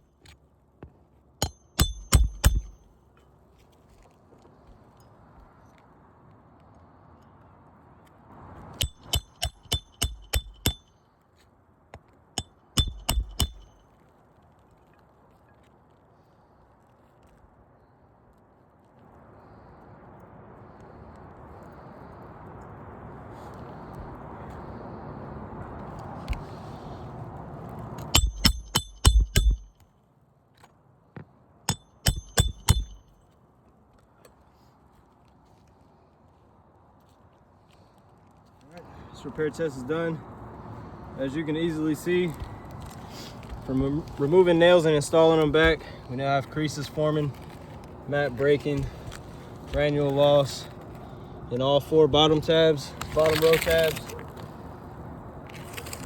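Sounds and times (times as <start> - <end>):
hammer ringing on metal: 1.4 - 2.8, 8.8 - 10.9, 12.8 - 13.8, 28.1 - 29.8, 31.7 - 33.1.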